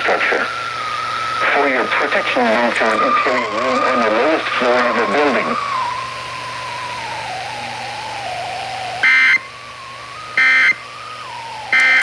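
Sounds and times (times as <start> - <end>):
buzzy digital tone bursts: 0.0 - 6.0
thin wavering whistle: 5.0 - 12.0.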